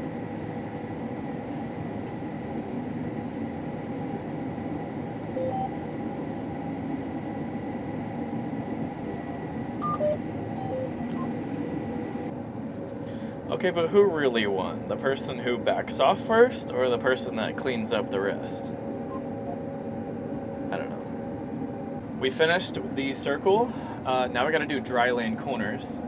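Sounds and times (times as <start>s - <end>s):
combine harvester running: 0.0s - 26.0s
short electronic beeps: 5.4s - 5.7s, 9.8s - 11.3s.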